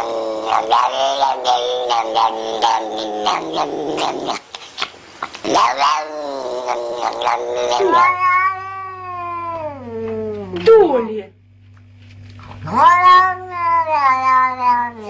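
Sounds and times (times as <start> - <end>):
steady low hum: 0.0 - 15.0
cat yowling: 5.5 - 10.5, 12.6 - 15.0.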